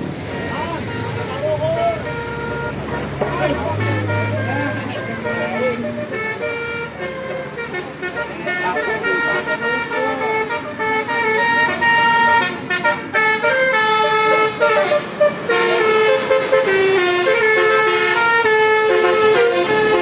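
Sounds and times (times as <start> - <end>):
multi-tone bus horn melody: 0.0 - 20.0.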